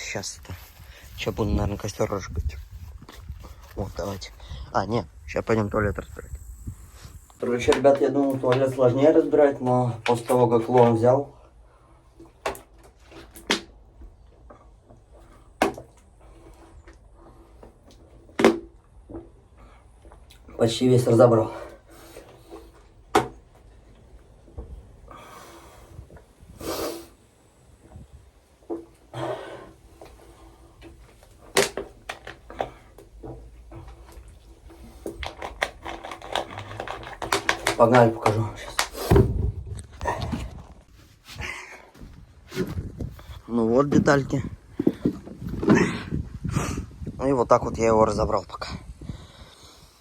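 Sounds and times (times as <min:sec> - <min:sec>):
heavy breath: 0:25.0 - 0:27.2, 0:29.1 - 0:30.8, 0:39.9 - 0:42.1.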